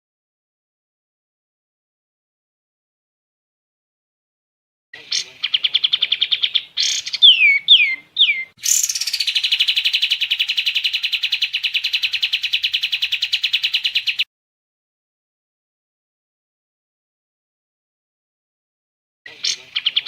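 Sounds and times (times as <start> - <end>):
songbird trilling and whistling: 5.1 - 14.3, 19.4 - 20.0.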